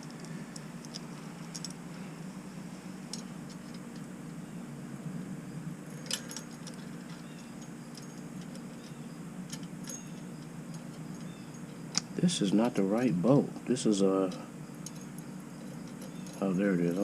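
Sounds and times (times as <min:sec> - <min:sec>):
metal bike parts clinking: 0:00.0 - 0:02.1, 0:03.0 - 0:04.1, 0:05.9 - 0:13.1, 0:14.2 - 0:17.0
steady low hum: 0:00.0 - 0:17.0.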